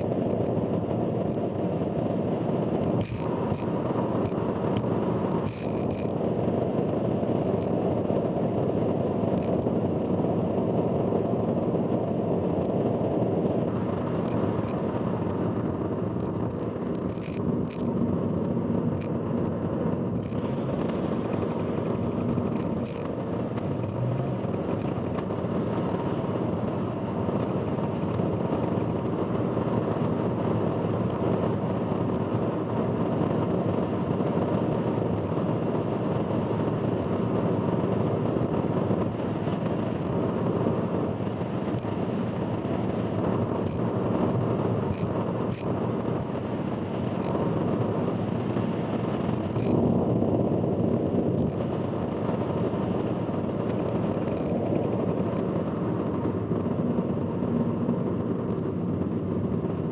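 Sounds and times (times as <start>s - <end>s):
car road noise from inside: 12.6s - 29.6s, 50.9s - 59.9s.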